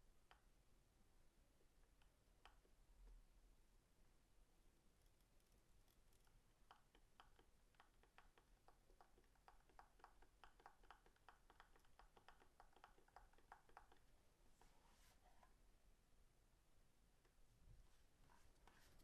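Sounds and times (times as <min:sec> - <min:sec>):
keyboard typing clicks: 0:06.2 - 0:14.1.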